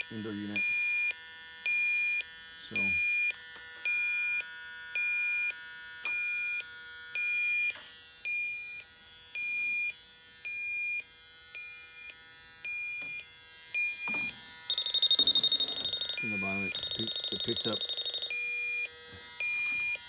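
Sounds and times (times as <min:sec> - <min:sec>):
leak detector beeping: 0:00.6 - 0:02.2, 0:05.0 - 0:06.6, 0:07.2 - 0:08.8, 0:09.4 - 0:11.0, 0:11.6 - 0:13.2, 0:13.8 - 0:20.0.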